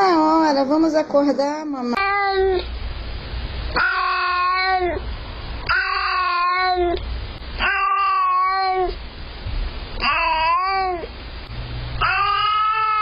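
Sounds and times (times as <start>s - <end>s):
cat yowling: 2.0s - 2.6s, 3.7s - 5.0s, 5.7s - 7.0s, 7.6s - 9.0s, 10.0s - 11.1s, 12.0s - 13.0s.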